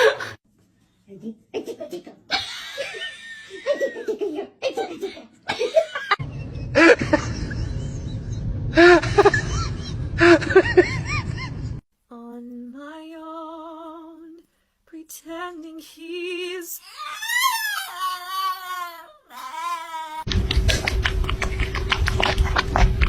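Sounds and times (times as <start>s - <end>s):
background noise: 0.0s - 6.2s, 11.9s - 20.3s
long vibrato vocal howling: 16.7s - 20.3s.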